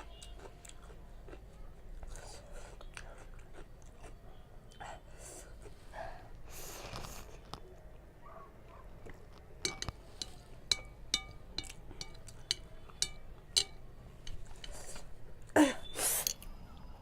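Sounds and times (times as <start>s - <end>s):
utensil clinking against bowl: 9.6s - 15.2s.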